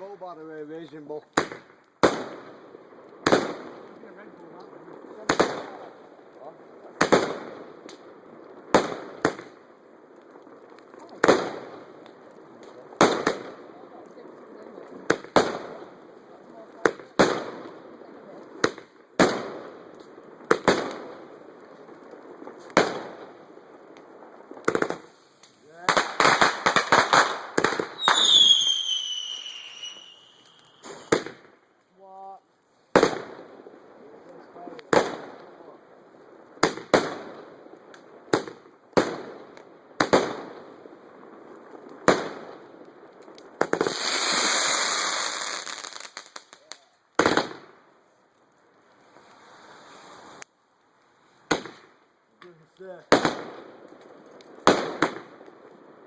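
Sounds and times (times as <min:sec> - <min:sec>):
firework bangs echoing: 0:01.4 - 0:04.1, 0:05.1 - 0:05.9, 0:07.0 - 0:09.6, 0:13.0 - 0:13.6, 0:18.5 - 0:21.4, 0:22.2 - 0:25.1, 0:25.8 - 0:31.5, 0:32.9 - 0:33.7
firework bangs: 0:01.4 - 0:09.7, 0:10.5 - 0:12.1, 0:12.9 - 0:13.7, 0:14.9 - 0:31.5, 0:32.9 - 0:33.8, 0:34.6 - 0:35.6, 0:36.5 - 0:41.3, 0:41.9 - 0:47.8, 0:53.1 - 0:56.0
firework crackling burst: 0:10.4 - 0:32.2, 0:36.5 - 0:47.8, 0:49.0 - 0:50.4.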